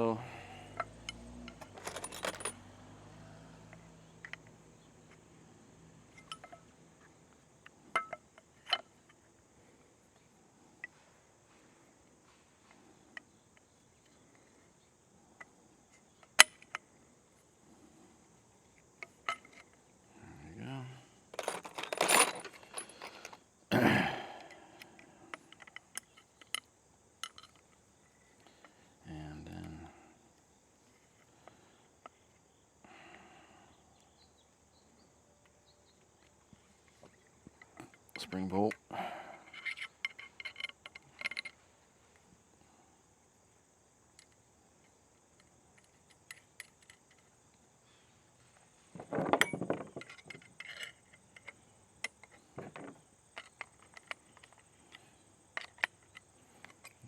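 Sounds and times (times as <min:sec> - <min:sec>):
metal parts clinking and rattling: 0:00.7 - 0:02.8, 0:03.7 - 0:04.5, 0:06.1 - 0:09.2, 0:19.0 - 0:19.8, 0:21.3 - 0:23.4, 0:25.3 - 0:28.7, 0:36.9 - 0:41.7, 0:44.1 - 0:47.4, 0:49.0 - 0:57.0.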